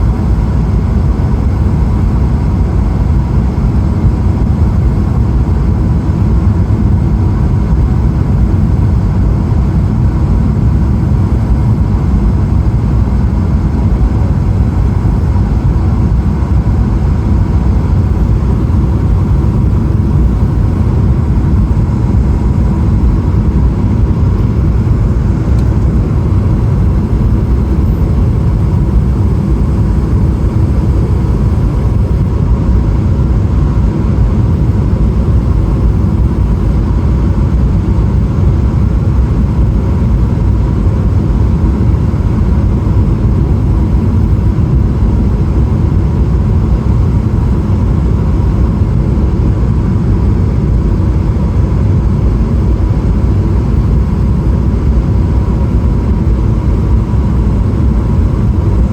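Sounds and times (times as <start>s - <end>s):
airplane cabin roar: 0.0s - 58.9s.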